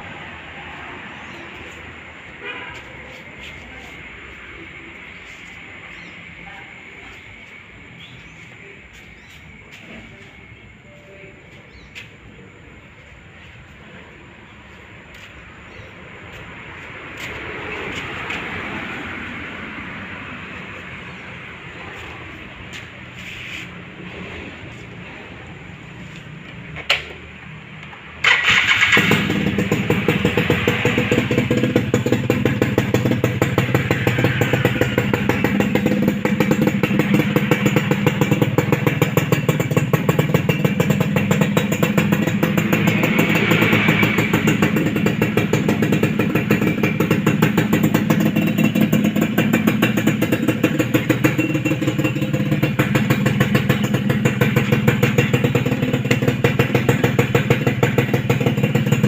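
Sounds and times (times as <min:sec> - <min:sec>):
motorcycle engine running: 0:28.2 - 0:59.0.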